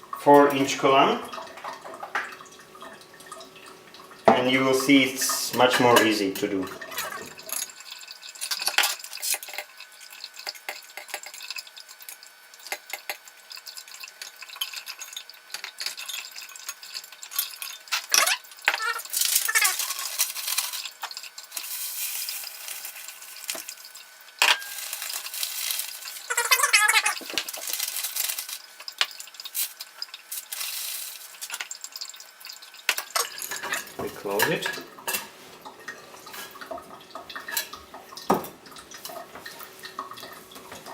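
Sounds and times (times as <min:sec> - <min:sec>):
plant material rustling and scraping: 0:19.0 - 0:21.0, 0:21.6 - 0:23.8.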